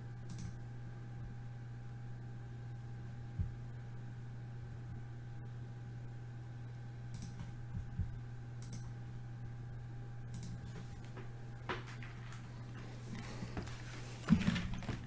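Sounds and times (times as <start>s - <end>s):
low electrical hum: 0.0s - 15.0s
light sharp clicks: 7.1s - 7.9s, 8.6s - 9.0s, 10.3s - 11.1s.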